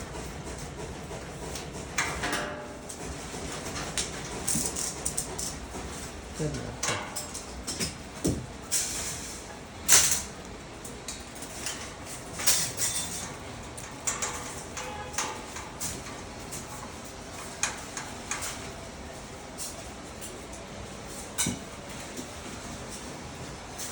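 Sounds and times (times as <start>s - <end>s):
metal rack parts knocking: 11.6s - 16.2s.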